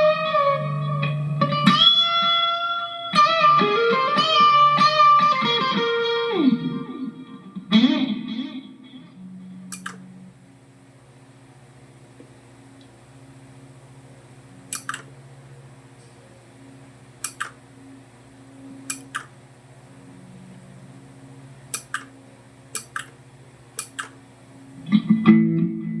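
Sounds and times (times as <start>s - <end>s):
guitar chord strummed: 0.0s - 9.8s, 24.8s - 26.0s
electrical hum of guitar rig: 0.0s - 26.0s
sharp switch clicks: 9.7s - 10.0s, 14.7s - 15.1s, 17.2s - 17.6s, 18.9s - 19.3s, 21.7s - 22.1s, 22.7s - 23.2s, 23.8s - 24.2s.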